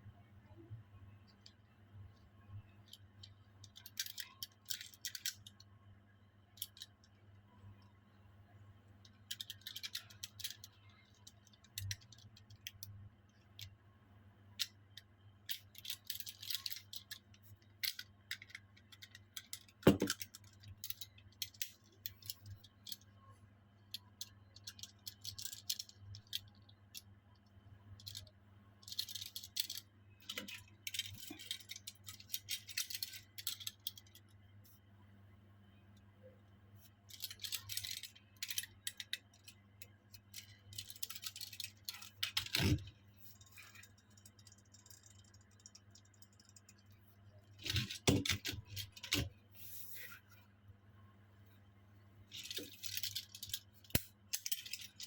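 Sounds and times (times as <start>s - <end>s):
toy cars clicking and rattling: 2.8s - 5.6s, 6.6s - 7.0s, 9.0s - 13.8s, 14.6s - 23.1s, 23.9s - 34.3s, 37.1s - 46.9s, 52.3s - 55.0s.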